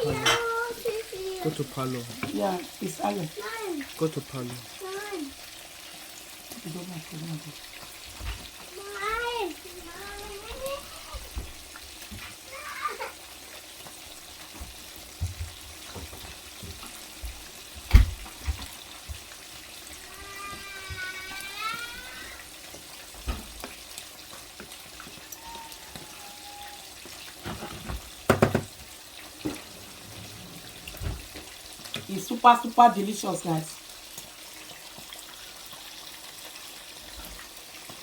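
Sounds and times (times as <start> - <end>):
clatter of knocks: 27.4 - 28.7.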